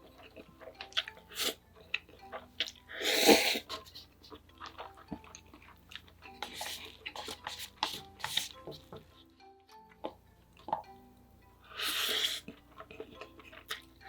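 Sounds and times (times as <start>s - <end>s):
chewing and mouth clicks: 0.0s - 2.9s, 3.6s - 8.8s, 12.4s - 14.0s.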